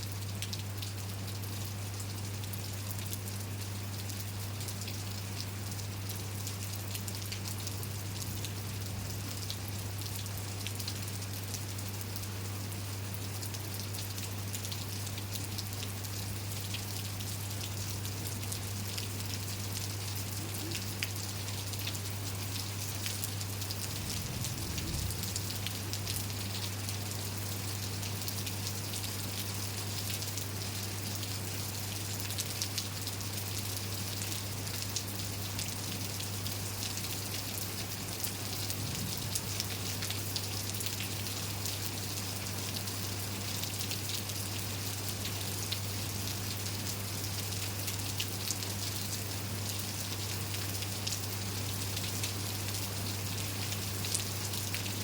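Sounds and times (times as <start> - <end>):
rain falling: 0.1 - 55.0
low hum: 23.6 - 26.4.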